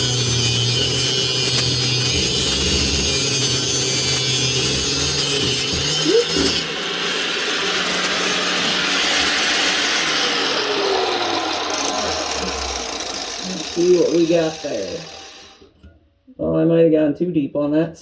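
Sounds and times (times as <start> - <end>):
angle grinder cutting pipe: 0.0 - 15.9.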